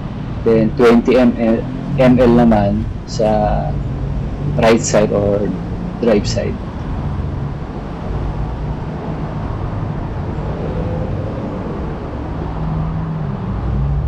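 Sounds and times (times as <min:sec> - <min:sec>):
low background rumble: 0:00.0 - 0:06.7
low hum: 0:00.0 - 0:08.6.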